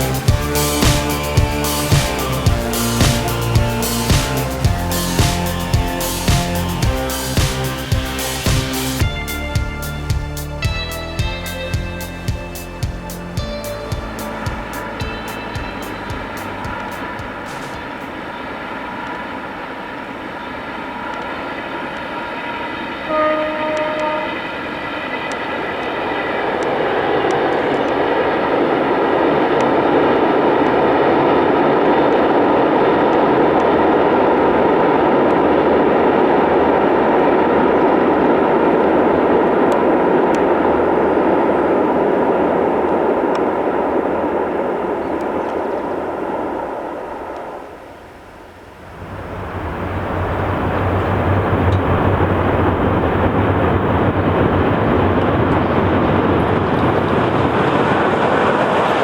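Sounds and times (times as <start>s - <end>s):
train rumbling by: 0.0s - 59.0s
train horn: 22.4s - 27.9s.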